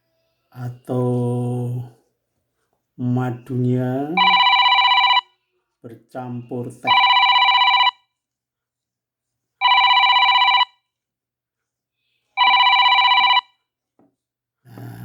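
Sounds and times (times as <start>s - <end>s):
telephone ringing: 4.1s - 5.4s, 6.9s - 8.1s, 9.6s - 10.8s, 12.4s - 13.6s.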